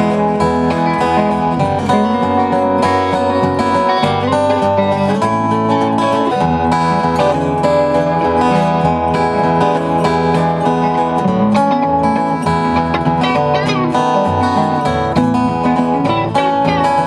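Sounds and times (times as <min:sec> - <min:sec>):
guitar strumming: 0:00.0 - 0:17.0
live country-folk song: 0:00.0 - 0:17.0.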